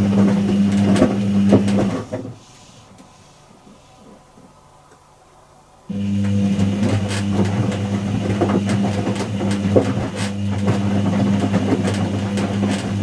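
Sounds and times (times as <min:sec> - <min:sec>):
washing machine rattling and clicking: 0:00.0 - 0:02.4, 0:05.9 - 0:13.0
washing machine humming: 0:00.0 - 0:13.0.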